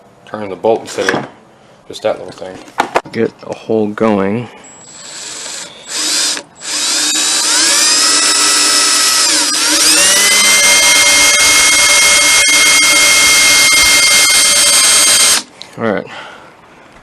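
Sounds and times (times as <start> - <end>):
electric drill whining: 4.8 - 15.5.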